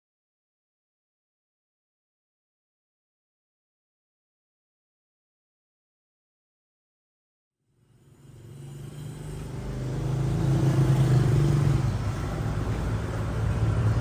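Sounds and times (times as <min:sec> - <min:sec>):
road noise: 0:07.7 - 0:14.0
vehicle engines humming: 0:07.9 - 0:14.0.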